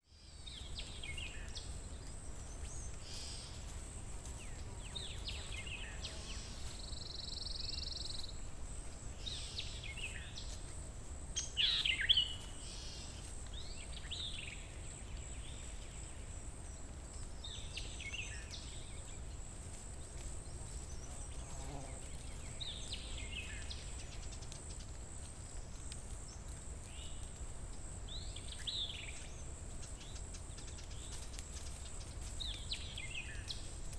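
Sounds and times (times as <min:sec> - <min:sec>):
songbirds singing: 0:00.0 - 0:33.9
high-pitched hiss: 0:00.1 - 0:16.2.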